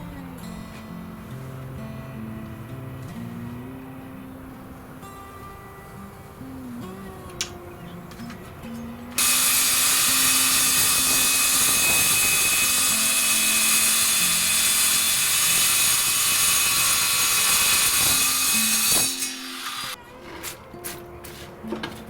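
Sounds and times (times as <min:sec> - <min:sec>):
power tool running harshly: 0:09.2 - 0:20.0.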